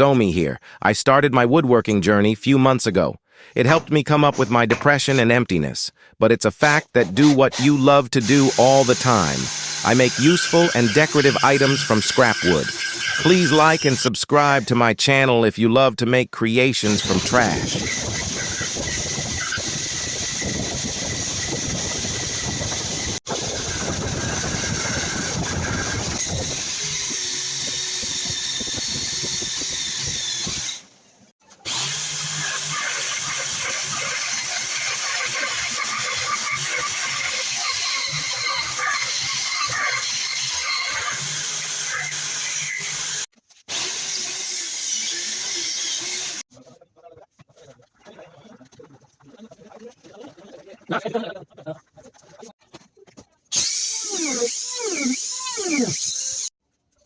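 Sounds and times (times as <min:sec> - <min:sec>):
wood lathe turning wood: 0:06.6 - 0:14.9, 0:16.8 - 0:30.9, 0:31.7 - 0:46.4.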